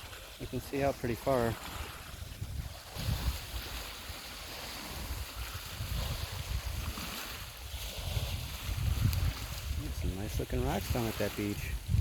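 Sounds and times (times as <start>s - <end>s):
waves washing on rocky shore: 0.0s - 12.0s
wind rumbling on microphone: 0.0s - 12.0s.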